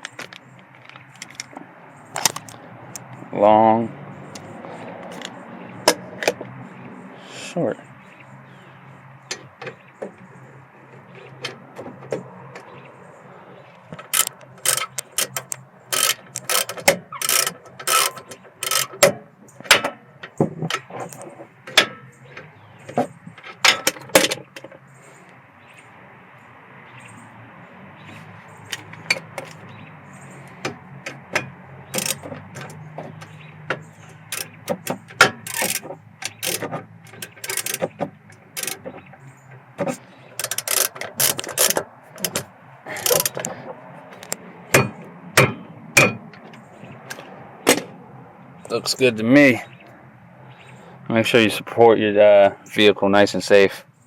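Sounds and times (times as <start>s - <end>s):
hand ratchet clicking: 14.1s - 19.1s, 31.9s - 32.8s, 34.3s - 38.8s, 40.4s - 43.5s.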